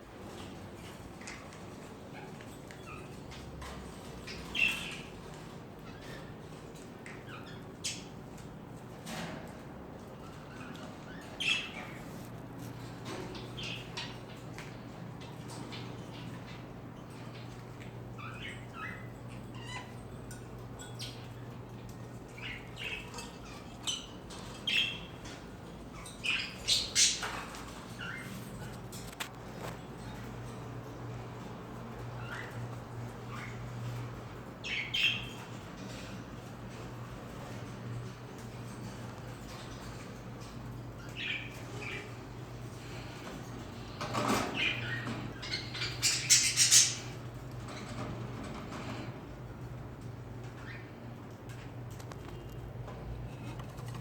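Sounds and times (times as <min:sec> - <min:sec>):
birds chirping and squawking: 0:02.1 - 0:06.6, 0:07.2 - 0:08.4, 0:10.1 - 0:12.1, 0:12.7 - 0:51.3.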